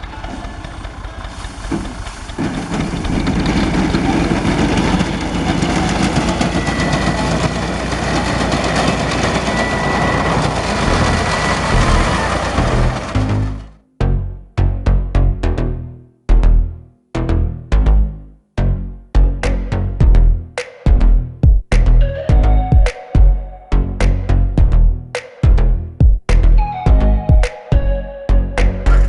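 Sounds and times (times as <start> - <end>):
tractor engine under load: 0.0 - 13.8.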